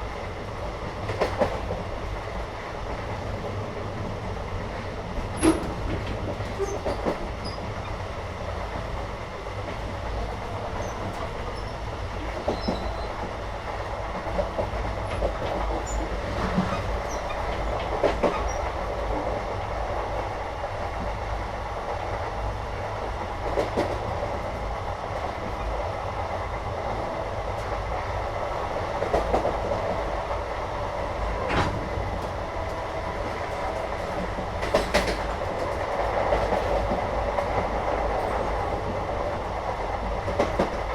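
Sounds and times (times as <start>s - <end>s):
train carriage rumble: 0.0s - 40.9s.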